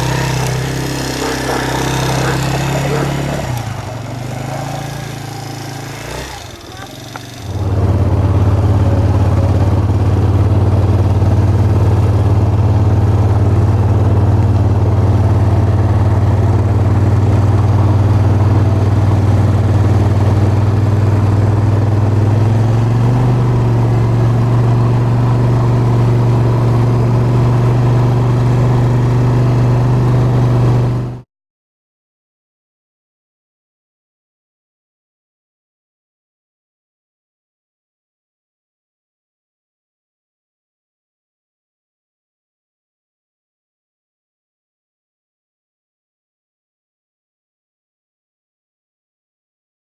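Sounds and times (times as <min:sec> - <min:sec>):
atv engine running: 0:00.0 - 0:31.2.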